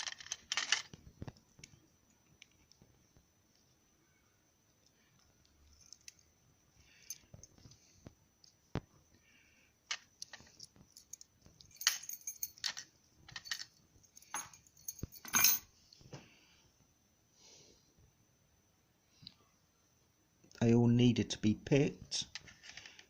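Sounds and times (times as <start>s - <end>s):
small metal clicks and clinks: 5.2s - 6.3s, 6.9s - 7.8s, 9.9s - 15.7s.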